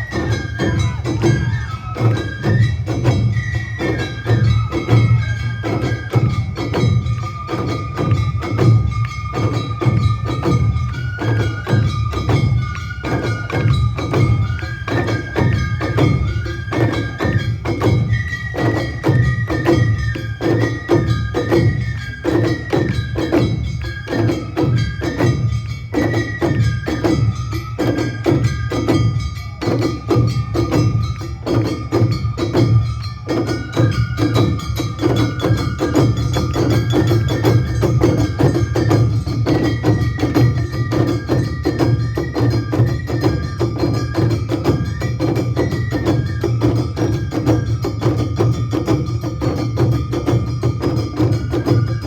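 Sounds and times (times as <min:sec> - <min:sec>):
drums beating fast: 0:00.0 - 0:52.0
high flute melody: 0:00.0 - 0:52.0.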